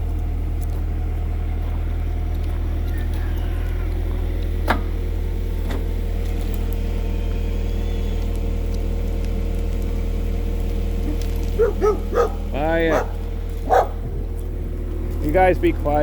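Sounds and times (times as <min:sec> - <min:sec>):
excavator diesel engine running: 0:00.0 - 0:16.0
dog barking: 0:11.0 - 0:14.1.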